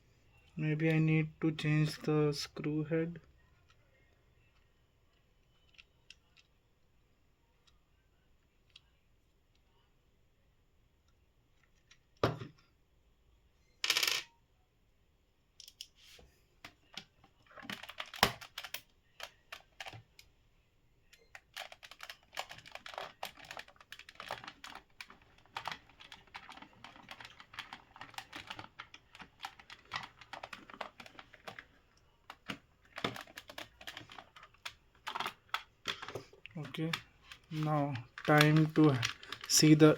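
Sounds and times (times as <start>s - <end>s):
plastic clicks and rattles: 21.2s - 39.9s.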